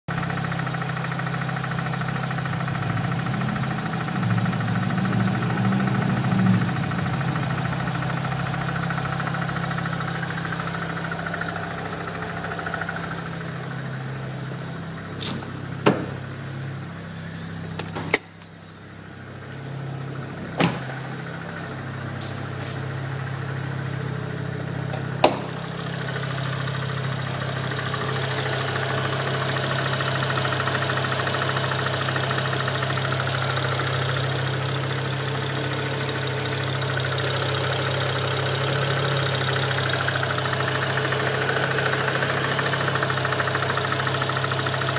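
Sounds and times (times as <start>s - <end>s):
car engine idling: 0.1s - 44.9s
engine tapping: 0.1s - 44.9s
sharp engine knocks: 14.6s - 16.4s, 17.7s - 18.5s, 19.6s - 22.4s, 24.8s - 25.7s.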